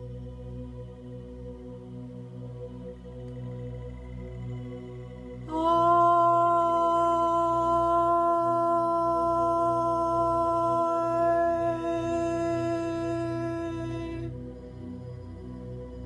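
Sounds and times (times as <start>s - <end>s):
low ambient drone: 2.0s - 16.0s
person toning a long vowel: 5.5s - 14.3s.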